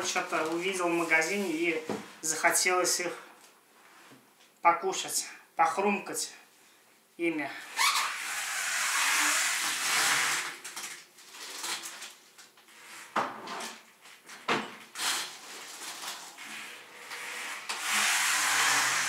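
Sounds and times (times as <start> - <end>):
plastic bags rustling: 0.0 - 2.3, 10.6 - 12.9, 14.0 - 16.7.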